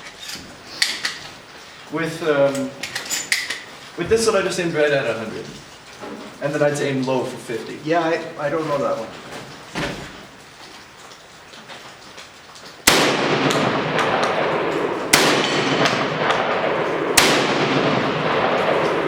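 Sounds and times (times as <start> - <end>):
shotgun shots: 12.8 - 19.0.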